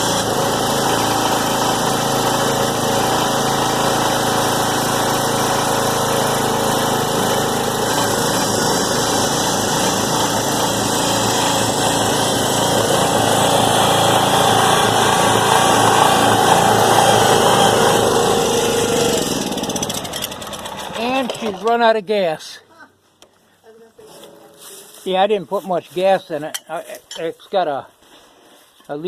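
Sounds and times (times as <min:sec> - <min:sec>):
small gasoline engine running: 0:00.0 - 0:21.8.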